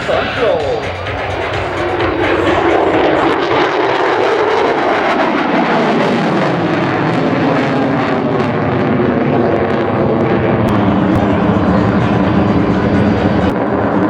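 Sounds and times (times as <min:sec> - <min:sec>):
deep jet rumble: 0:00.0 - 0:14.0
loud jet engine noise: 0:00.0 - 0:14.0.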